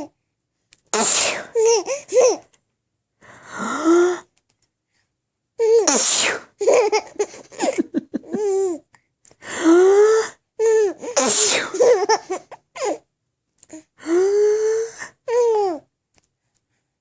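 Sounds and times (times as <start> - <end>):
person sneezing: 0.9 - 1.6, 5.9 - 6.6, 11.1 - 12.0
baby giggling: 1.5 - 2.5, 6.6 - 8.9, 10.6 - 13.0.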